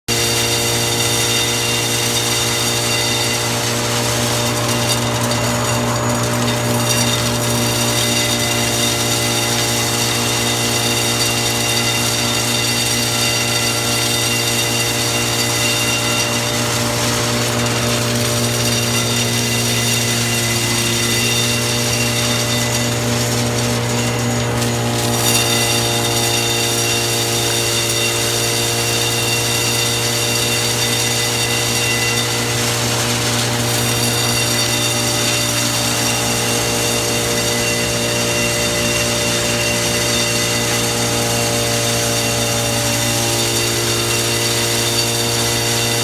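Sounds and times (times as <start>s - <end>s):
excavation machine droning: 0.1s - 46.0s.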